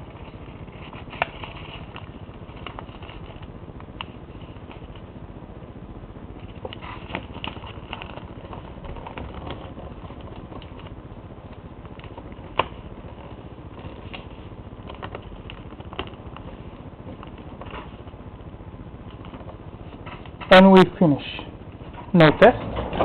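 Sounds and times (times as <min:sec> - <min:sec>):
low background hum: 0:00.0 - 0:23.0
paper being folded and creased: 0:00.1 - 0:03.5, 0:11.9 - 0:18.1.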